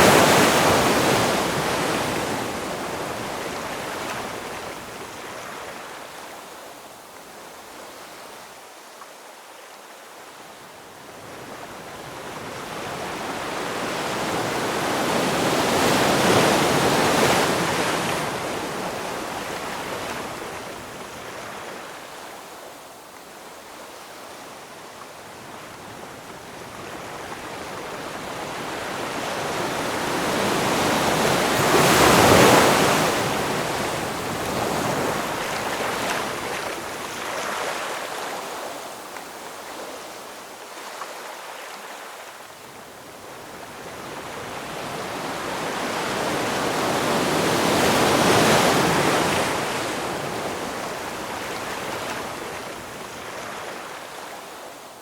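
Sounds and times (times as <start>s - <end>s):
ocean waves rushing: 0.0s - 4.0s, 28.5s - 39.0s.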